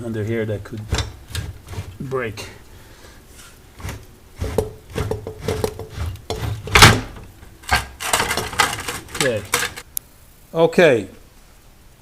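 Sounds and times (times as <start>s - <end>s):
metal knocks and clatters: 0.8s - 2.0s, 3.8s - 9.8s
metal unit scraping as it slides: 0.8s - 2.2s, 3.3s - 9.8s.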